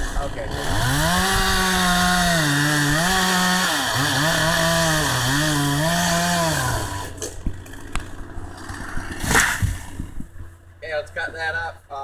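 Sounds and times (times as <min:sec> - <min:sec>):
chainsaw engine running: 0:00.0 - 0:08.8.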